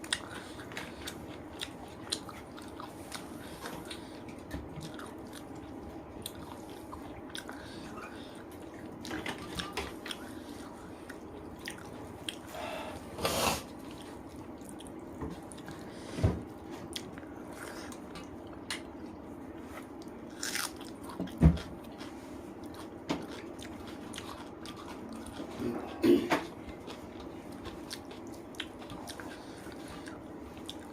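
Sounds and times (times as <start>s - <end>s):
person chewing food: 0.0s - 30.9s.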